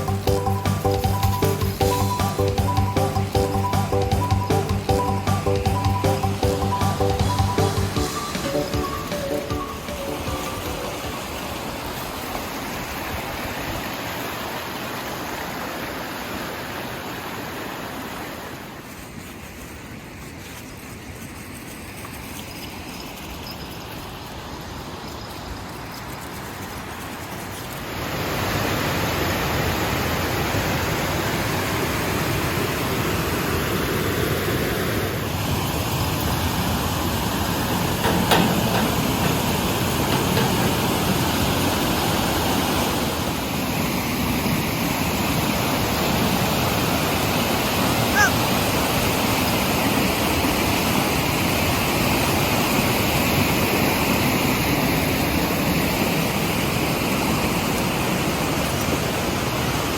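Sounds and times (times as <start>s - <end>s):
high chirp: 0.0s - 11.7s
rushing water: 0.0s - 59.9s.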